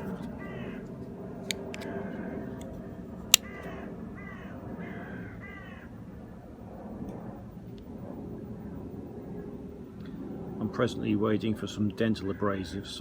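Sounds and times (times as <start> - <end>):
crow cawing: 0.4 - 0.8, 3.4 - 5.9.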